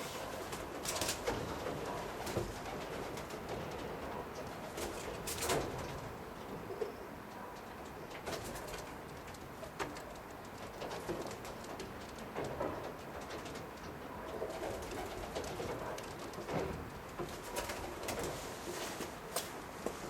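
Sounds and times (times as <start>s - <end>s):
pigeons cooing: 0.0s - 7.3s.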